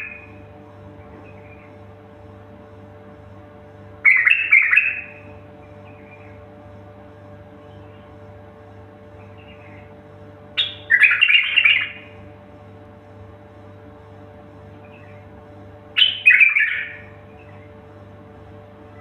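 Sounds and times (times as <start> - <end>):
songbird singing: 0.0 - 1.9, 4.0 - 6.5, 7.6 - 8.3, 9.1 - 10.0, 10.6 - 12.2, 14.7 - 15.3, 16.0 - 17.8
steady low hum: 0.0 - 19.0.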